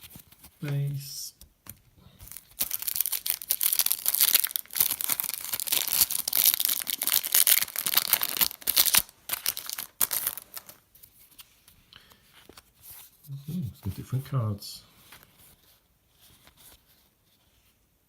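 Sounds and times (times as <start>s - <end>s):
wrapper tearing and crinkling: 2.2s - 10.8s.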